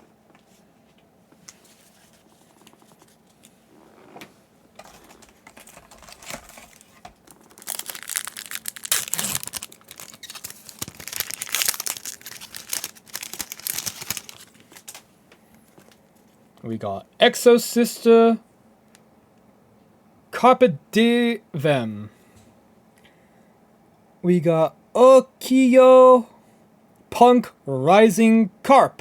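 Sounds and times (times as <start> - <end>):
plastic foil wrapper crinkling: 4.8 - 16.4.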